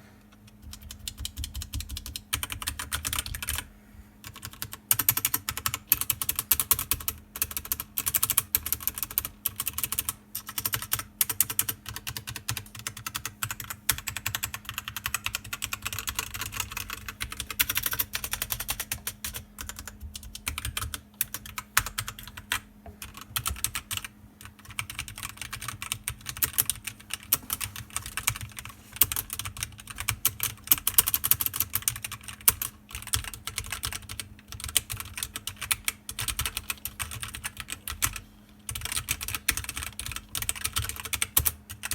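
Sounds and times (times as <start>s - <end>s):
fast typing on computer keyboard: 0.4s - 41.9s.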